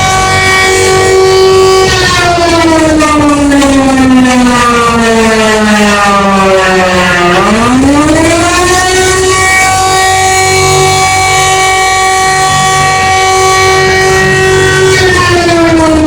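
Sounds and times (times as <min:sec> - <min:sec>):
buzzy alarm siren: 0:00.0 - 0:16.0.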